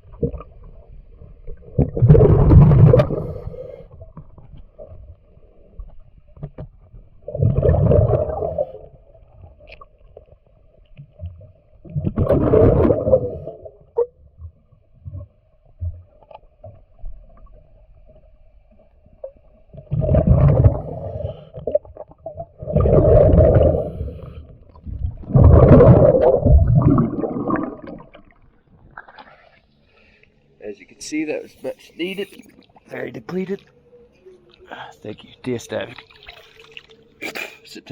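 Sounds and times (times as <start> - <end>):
faint steady hum: 0.0 - 37.9
diver exhaling bubbles underwater: 1.4 - 4.4, 7.2 - 9.0, 11.8 - 14.0, 19.7 - 29.5.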